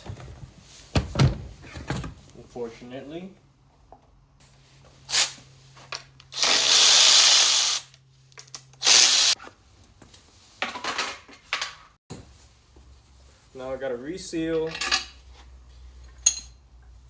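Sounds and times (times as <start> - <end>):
power tool running: 6.4 - 7.9, 8.8 - 9.4.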